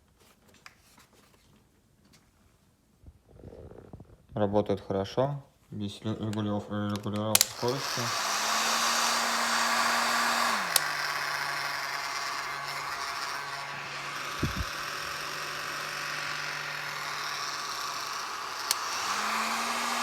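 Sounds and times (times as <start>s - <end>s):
heat gun fan whirring: 6.2s - 20.0s
switch clicks: 6.3s - 7.7s.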